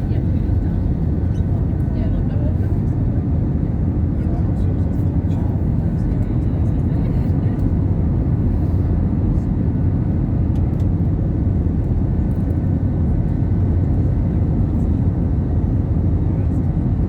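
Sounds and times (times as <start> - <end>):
airplane cabin low rumble: 0.0 - 17.0.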